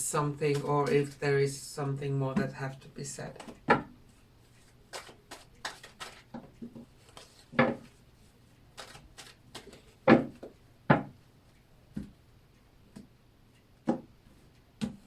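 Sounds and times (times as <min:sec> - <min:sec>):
cards being shuffled: 0:04.4 - 0:10.0
card slaps: 0:04.9 - 0:06.3.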